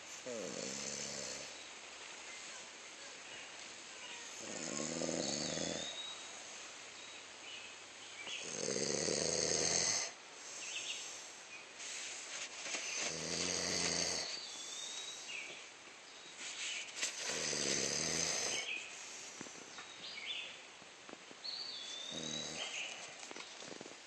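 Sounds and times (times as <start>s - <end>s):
man snoring: 0.2s - 1.6s, 4.4s - 6.0s, 8.4s - 10.2s, 13.1s - 14.4s, 17.2s - 18.7s, 22.1s - 22.9s.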